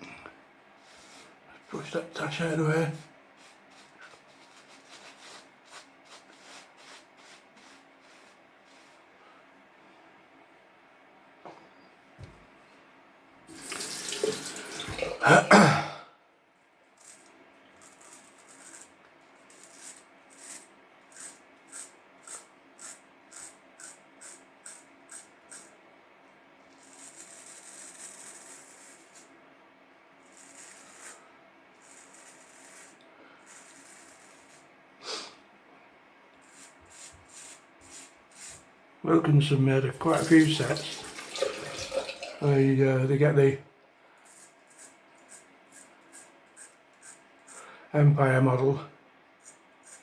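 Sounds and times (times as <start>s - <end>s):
razor scraping stubble: 17.0s - 25.7s, 30.2s - 31.2s, 31.8s - 34.7s, 36.4s - 38.6s, 44.2s - 47.7s, 49.4s - 50.0s
water splashing: 40.1s - 42.5s.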